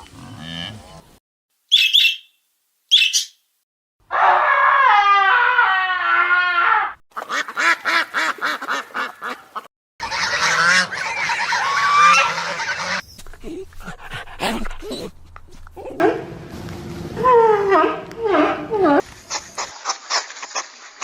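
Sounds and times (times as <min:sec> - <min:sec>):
fowl calling: 0:07.2 - 0:13.0.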